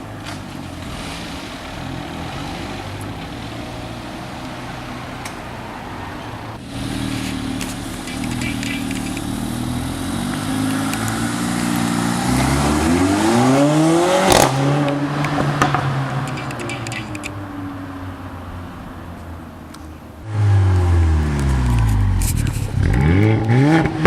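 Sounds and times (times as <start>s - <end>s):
car engine revving: 0.5s - 17.4s, 20.2s - 24.0s
exhaust pops and crackles: 6.6s - 11.9s, 20.8s - 24.0s.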